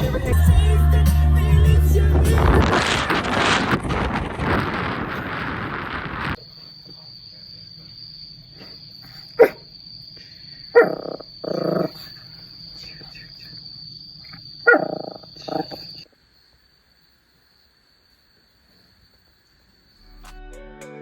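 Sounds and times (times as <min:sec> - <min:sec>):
animal crying loudly: 0:10.8 - 0:12.0.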